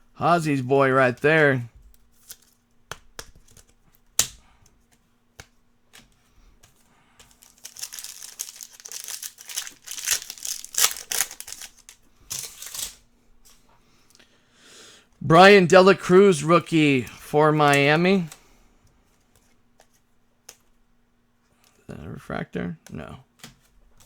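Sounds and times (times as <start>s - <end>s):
cards sliding and shuffling: 0.5s - 13.6s, 17.0s - 18.5s
cards clicking and tapping: 1.0s - 13.0s, 17.0s - 18.5s
foil wrapper crinkling: 7.2s - 13.0s.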